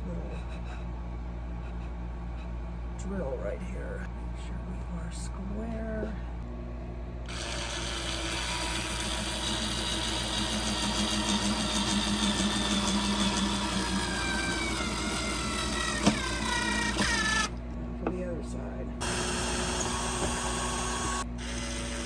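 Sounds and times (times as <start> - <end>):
power drill drilling into wood: 7.3 - 17.6, 19.0 - 22.0
drill click: 7.3 - 17.7.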